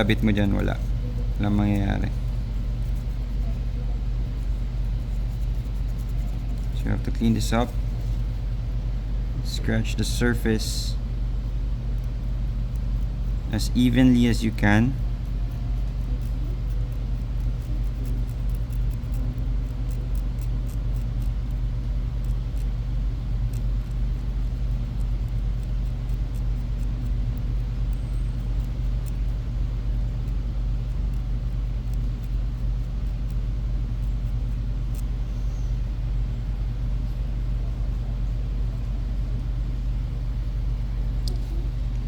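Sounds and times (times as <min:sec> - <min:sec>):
low background hum: 0:00.0 - 0:42.0
tool scratching metal contacts: 0:11.6 - 0:35.3.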